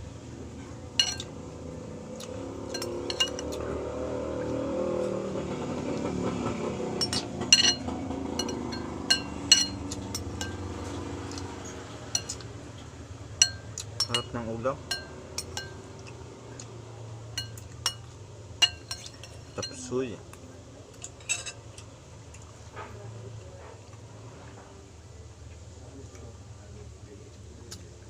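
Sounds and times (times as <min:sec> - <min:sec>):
utensils clinking against a plate: 0:00.9 - 0:01.4, 0:02.2 - 0:03.9, 0:04.5 - 0:12.6, 0:13.4 - 0:16.7, 0:17.4 - 0:20.0, 0:20.9 - 0:23.0.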